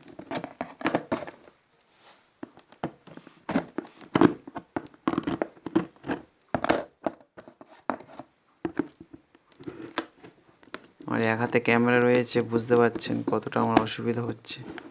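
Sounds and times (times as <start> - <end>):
cardboard rustling and tearing: 9.6 - 14.9.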